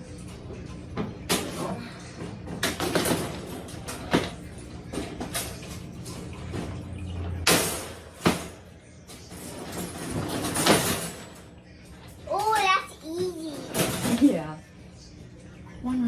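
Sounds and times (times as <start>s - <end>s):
dog crate panels knocking and rattling: 1.0s - 5.8s, 7.4s - 11.4s, 13.4s - 14.4s.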